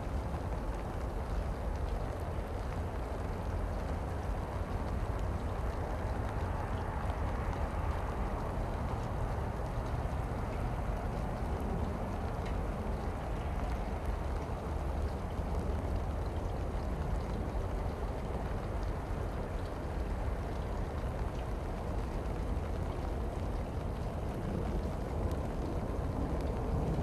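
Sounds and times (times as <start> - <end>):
low rumbling outdoor noise: 0.0 - 27.0
faint ticks: 0.2 - 27.0.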